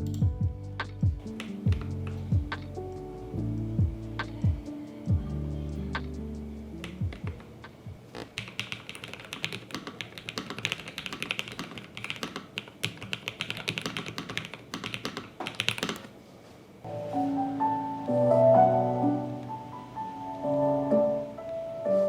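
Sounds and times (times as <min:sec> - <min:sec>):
mechanical keyboard typing: 0:01.2 - 0:02.2, 0:06.8 - 0:07.5, 0:08.2 - 0:16.1.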